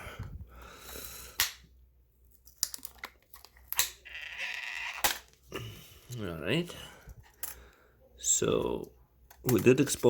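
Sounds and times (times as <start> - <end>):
hard plastic clicks and snaps: 2.4 - 4.0
plastic scraping squeak: 4.0 - 5.1.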